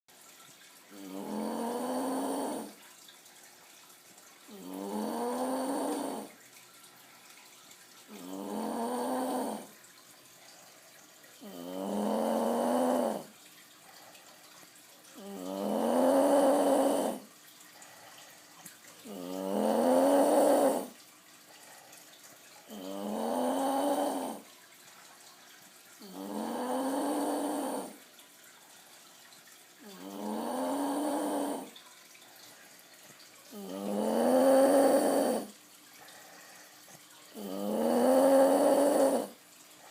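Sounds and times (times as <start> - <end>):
man snoring: 1.0 - 2.8, 4.5 - 6.3, 8.2 - 9.7, 11.4 - 13.3, 15.2 - 17.3, 19.1 - 21.0, 22.7 - 24.4, 26.0 - 28.0, 29.8 - 31.7, 33.5 - 35.5, 37.4 - 39.4
quiet breathing: 8.0 - 24.5, 26.0 - 39.9.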